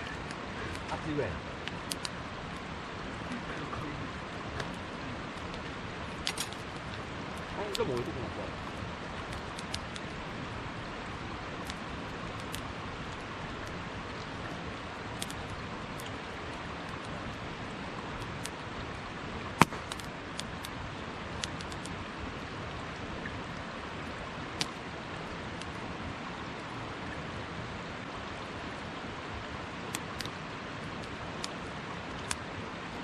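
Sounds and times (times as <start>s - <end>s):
stream water rushing: 0.0s - 33.0s
campfire crackling and popping: 4.4s - 10.3s, 11.5s - 17.4s, 18.1s - 20.8s.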